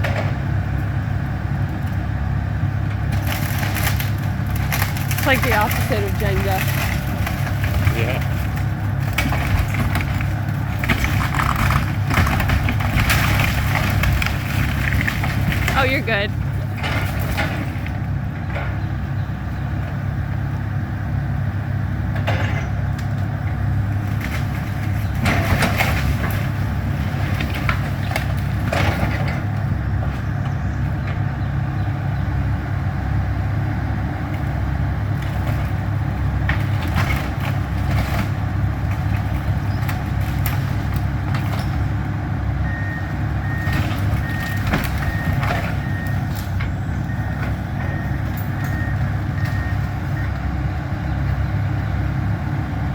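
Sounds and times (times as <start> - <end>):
diesel excavator engine running: 0.0 - 52.9
house demolition cracks and crashes: 3.0 - 18.8, 22.2 - 29.8, 34.4 - 42.4, 43.4 - 46.6.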